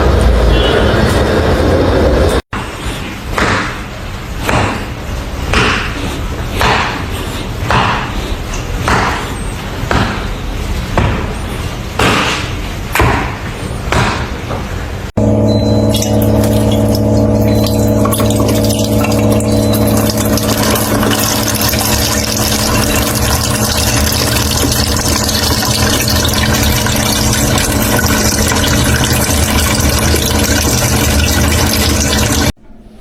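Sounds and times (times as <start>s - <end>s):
engine humming steadily: 15.2s - 32.5s.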